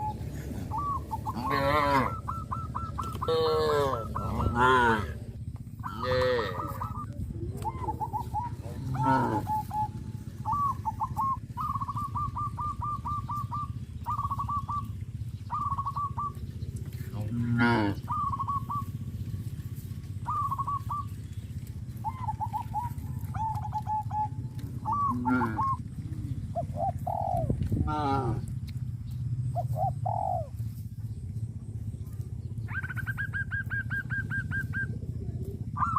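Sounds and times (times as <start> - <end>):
short repeated bird calls: 0.0 - 5.0, 5.8 - 17.1, 17.9 - 27.5
farm animals calling: 0.0 - 35.9
steady low hum: 0.0 - 35.9.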